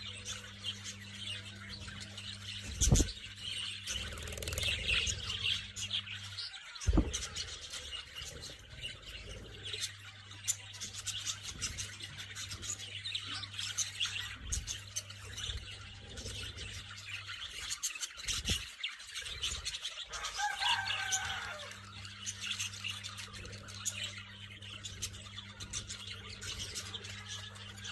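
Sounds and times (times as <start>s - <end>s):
steady low hum: 0.0s - 20.4s.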